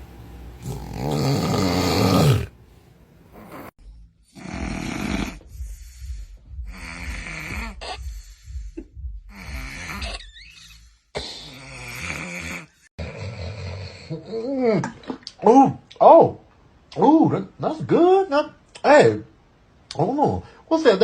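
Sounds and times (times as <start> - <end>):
person snoring: 0.6 - 2.6, 3.3 - 3.8, 4.4 - 5.4, 6.7 - 8.0, 9.3 - 10.2, 11.4 - 14.4.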